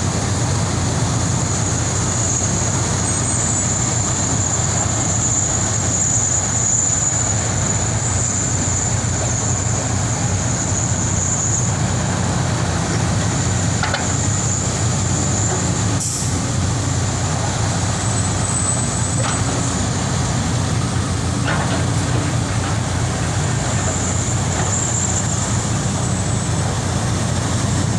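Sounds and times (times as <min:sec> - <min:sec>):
excavator diesel engine running: 0:00.0 - 0:27.9.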